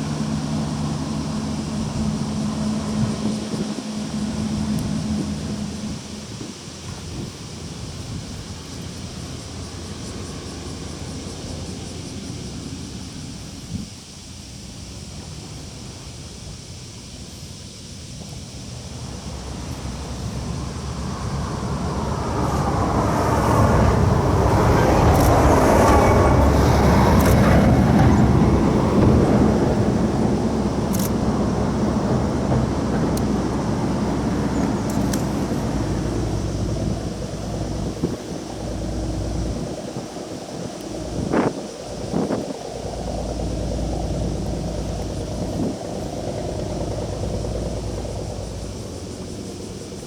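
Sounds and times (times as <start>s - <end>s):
vehicle passing by: 18.8s - 42.2s, 42.8s - 50.0s.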